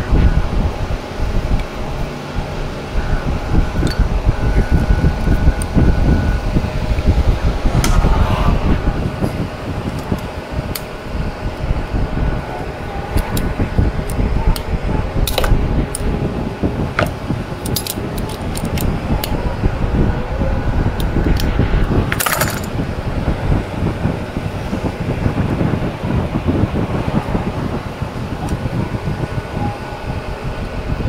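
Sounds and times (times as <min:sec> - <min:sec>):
steady low hum: 0:00.0 - 0:31.0
metal parts clinking: 0:17.6 - 0:18.8, 0:22.1 - 0:22.7.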